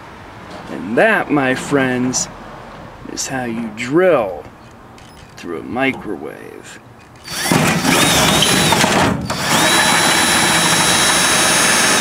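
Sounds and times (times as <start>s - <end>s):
power drill whining: 7.2s - 12.0s.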